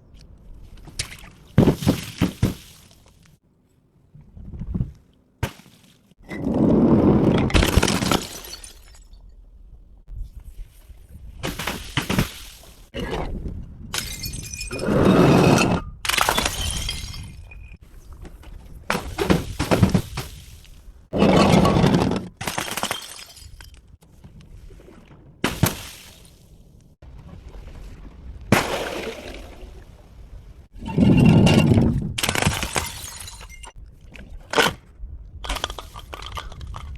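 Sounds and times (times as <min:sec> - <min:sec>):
glass bottles smashing: 0:07.6 - 0:09.2, 0:14.0 - 0:14.8, 0:15.5 - 0:17.8, 0:21.2 - 0:23.8, 0:32.2 - 0:33.8.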